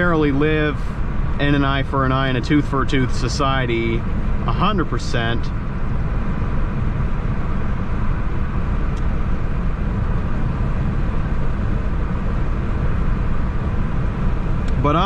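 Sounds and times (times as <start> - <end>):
vehicle engine and road noise: 0.0 - 15.0.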